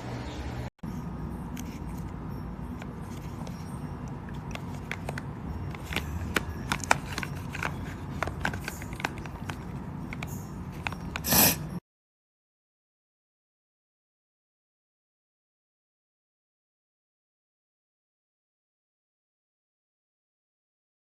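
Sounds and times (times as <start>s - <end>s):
short hiss: 11.2s - 11.6s.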